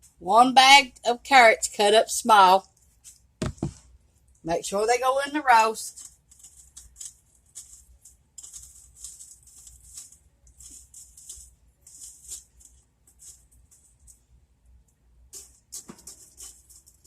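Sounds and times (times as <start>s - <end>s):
carrot pieces rattling into pot: 5.8s - 14.2s.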